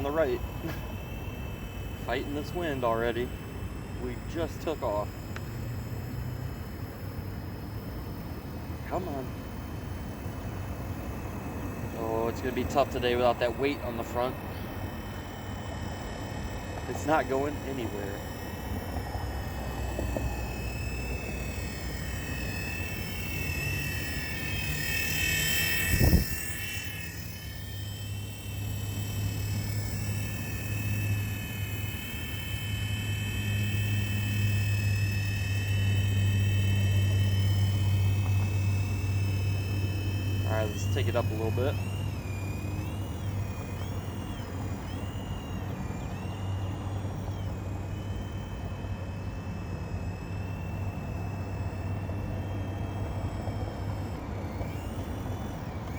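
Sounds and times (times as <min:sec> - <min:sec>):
toy helicopter motor whining: 0:00.0 - 0:55.9.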